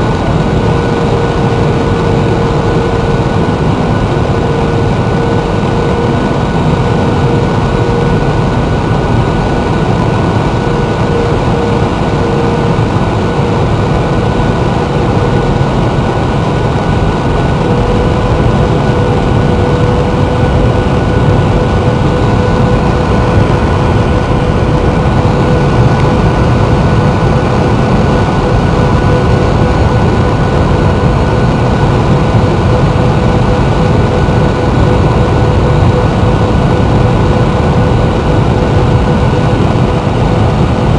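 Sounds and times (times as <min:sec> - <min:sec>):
constant whine: 0:00.0 - 0:40.9
jet cabin engine rumble: 0:00.0 - 0:40.9.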